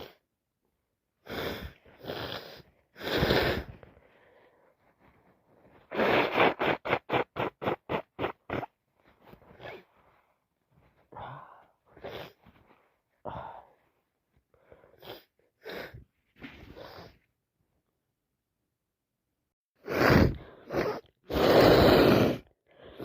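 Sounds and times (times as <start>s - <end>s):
nasal bursts: 5.9s - 8.7s
wet sniffs: 5.9s - 8.7s.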